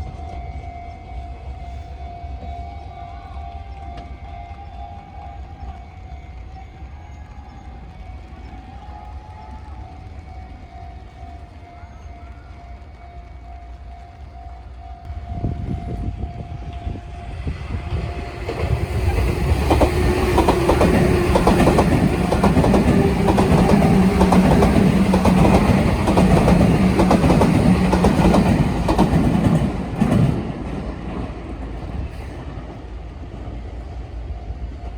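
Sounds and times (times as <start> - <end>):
train low hum: 0.0 - 34.9
train wheels clickety-clack: 15.6 - 34.9.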